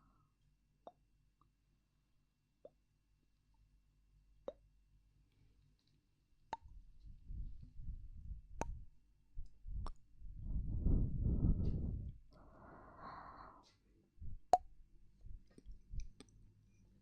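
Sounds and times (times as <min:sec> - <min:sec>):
muffled rubbing on microphone: 0:09.6 - 0:12.2.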